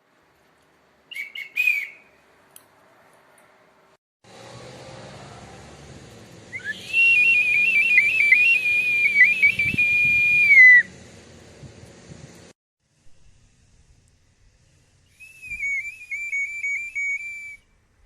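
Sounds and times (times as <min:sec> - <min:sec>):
clay whistle high note: 0:06.6 - 0:10.9, 0:15.1 - 0:17.7.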